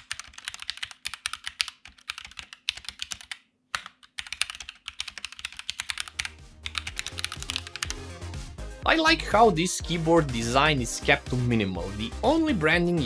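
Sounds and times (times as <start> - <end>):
mechanical keyboard typing: 0.0 - 8.1
background music: 6.0 - 13.0.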